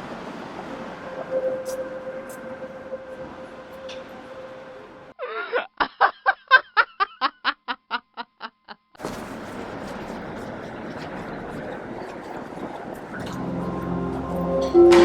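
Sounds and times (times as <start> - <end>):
steady humming tone: 0.0 - 5.1, 10.2 - 15.0
person laughing: 5.2 - 8.9.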